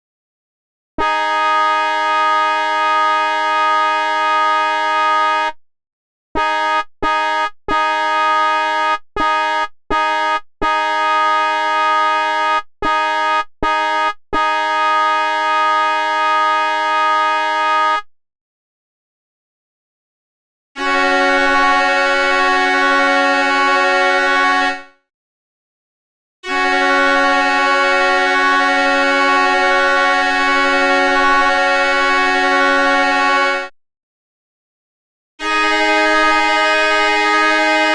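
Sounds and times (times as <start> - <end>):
train horn blasts: 1.0 - 5.5, 20.8 - 24.9, 26.5 - 33.7, 35.4 - 37.9.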